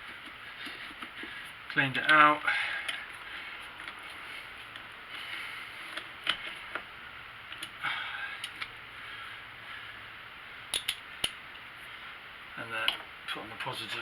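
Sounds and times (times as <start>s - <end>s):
sharp clicks and light knocks: 10.7s - 11.6s.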